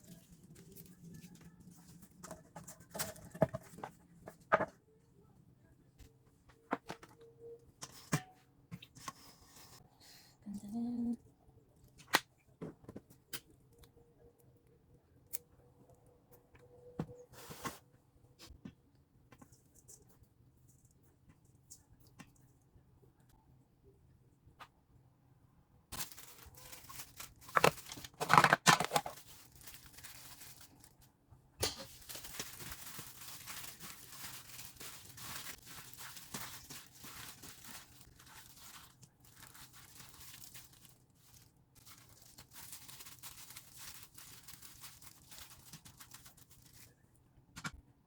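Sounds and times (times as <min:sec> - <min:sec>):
material crinkling and tearing: 0:25.9 - 0:31.1, 0:31.7 - 0:47.0.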